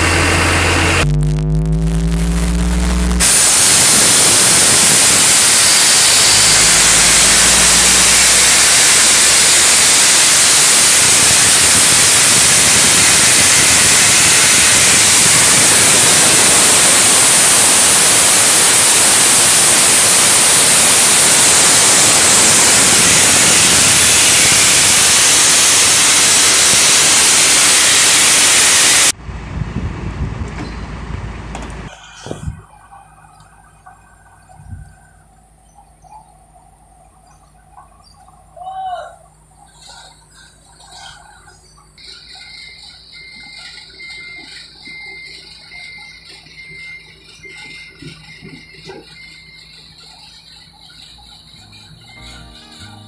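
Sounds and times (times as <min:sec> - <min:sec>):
compressed air hissing: 0:03.2 - 0:29.2.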